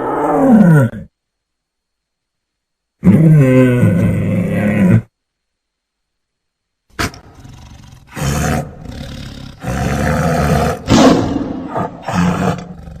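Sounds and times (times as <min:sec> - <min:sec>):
big cat roaring and snarling: 0:07.0 - 0:13.0.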